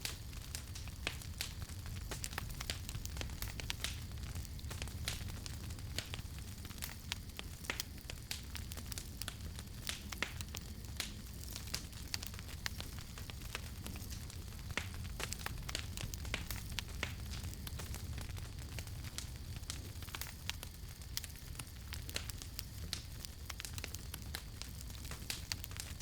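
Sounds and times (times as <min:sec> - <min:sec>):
campfire pops and snaps: 0:00.0 - 0:26.0
low rumble of flames: 0:00.0 - 0:26.0.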